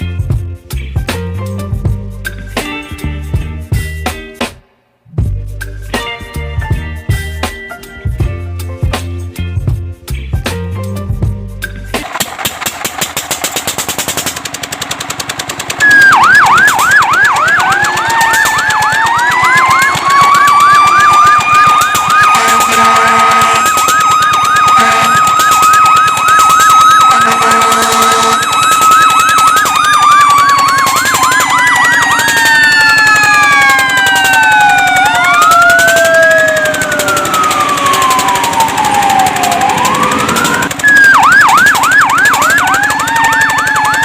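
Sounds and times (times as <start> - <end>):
fire truck siren yelp and wail: 15.8 - 44.0
rapid pulsing siren: 15.8 - 44.0
low-pitched horn blasts: 22.3 - 23.8, 24.8 - 25.3, 27.1 - 28.5.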